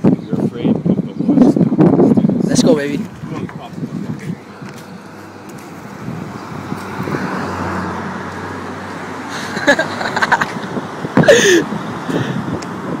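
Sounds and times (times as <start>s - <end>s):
car driving past: 5.0s - 9.8s.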